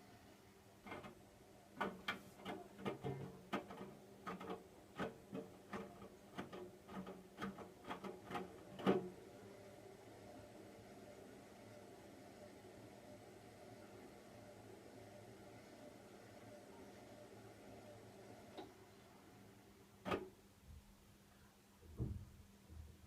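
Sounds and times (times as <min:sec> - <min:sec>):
faint steady hum: 0:00.0 - 0:23.0
laundry thudding in washing machine: 0:00.8 - 0:09.2, 0:20.0 - 0:20.4.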